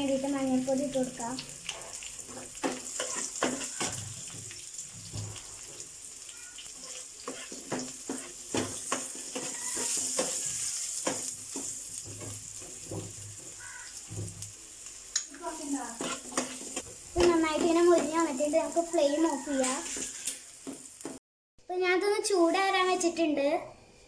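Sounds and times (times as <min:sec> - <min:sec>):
food sizzling in hot oil: 0:00.0 - 0:21.2
spatula scraping a pan: 0:01.7 - 0:06.0, 0:06.6 - 0:14.8, 0:15.5 - 0:21.2.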